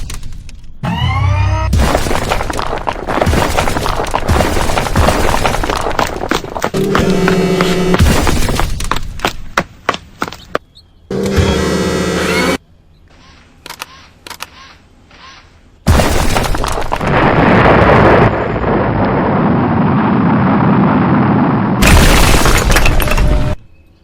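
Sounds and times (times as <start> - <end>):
loud crashing boom: 15.9 - 23.1.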